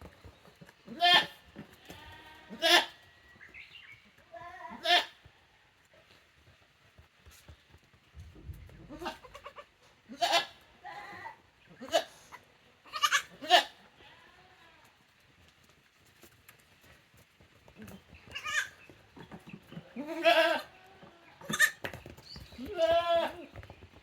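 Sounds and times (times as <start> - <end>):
goats bleating: 0.9 - 3.2, 4.3 - 5.2, 8.9 - 12.2, 12.8 - 14.9, 18.3 - 18.7, 19.9 - 21.8, 22.6 - 23.5.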